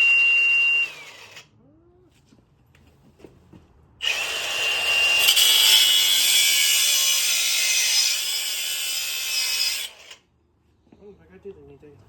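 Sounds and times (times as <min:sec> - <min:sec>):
angle grinder cutting metal: 0:00.0 - 0:01.4, 0:04.0 - 0:10.2.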